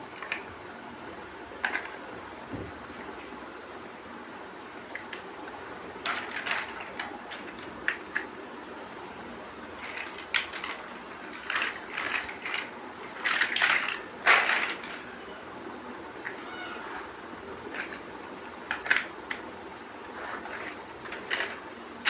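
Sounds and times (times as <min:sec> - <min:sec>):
plastic bricks clicking and rattling: 0:00.2 - 0:02.1, 0:06.0 - 0:08.4, 0:09.7 - 0:15.1, 0:17.6 - 0:19.5, 0:20.3 - 0:21.8.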